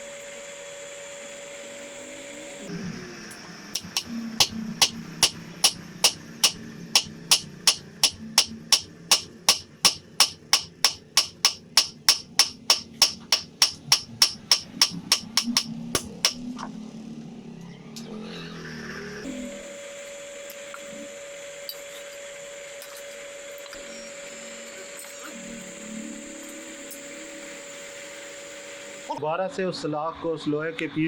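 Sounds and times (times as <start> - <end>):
hammer blows on anvil: 3.8 - 16.4.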